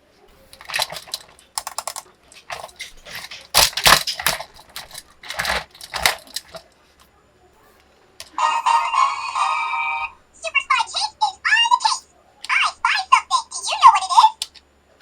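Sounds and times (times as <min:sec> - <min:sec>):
packaging clicking and crackling: 0:00.4 - 0:06.7.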